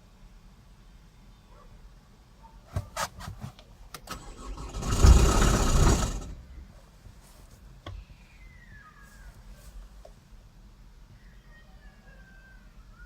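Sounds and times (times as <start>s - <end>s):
engine cranking with rattle: 4.0s - 6.7s.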